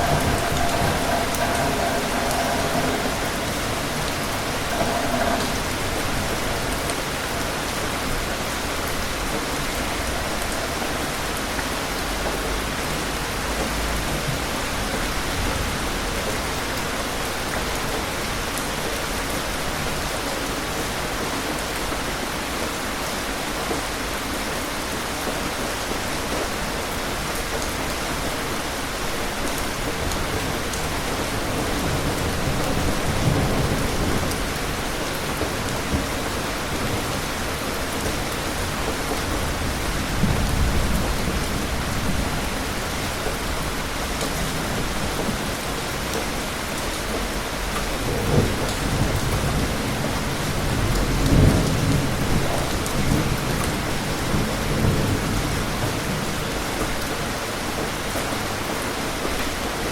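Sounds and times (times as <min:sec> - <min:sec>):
distant thunder rumbles: 0:00.0 - 0:11.3
steady rain falling: 0:00.0 - 0:59.9.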